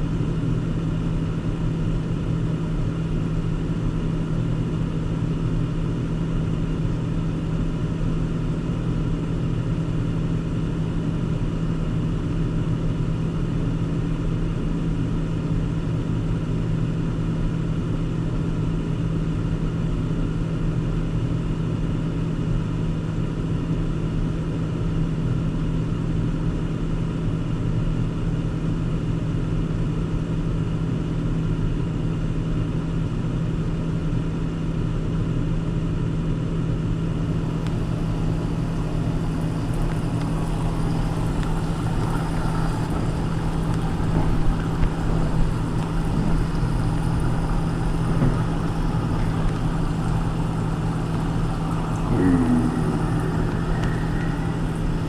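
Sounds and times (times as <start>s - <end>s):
car engine and road hum: 37.2s - 55.0s.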